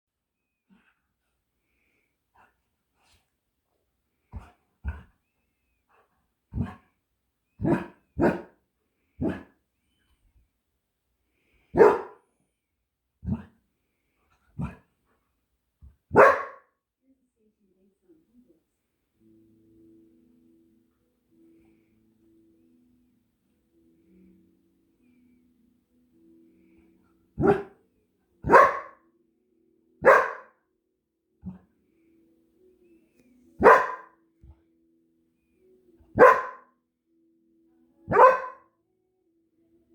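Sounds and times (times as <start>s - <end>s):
dog barking: 7.6s - 8.5s, 9.2s - 9.5s, 11.8s - 12.2s, 16.1s - 16.7s, 27.4s - 27.8s, 28.4s - 29.0s, 30.0s - 30.6s, 33.6s - 34.2s, 36.2s - 36.7s, 38.1s - 38.7s.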